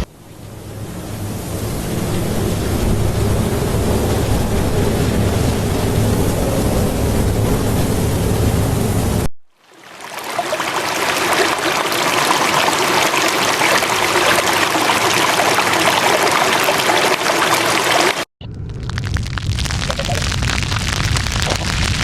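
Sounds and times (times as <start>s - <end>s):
low rumble with crackling: 0.0s - 9.3s, 18.4s - 22.0s
heavy rain hiss: 0.0s - 10.1s.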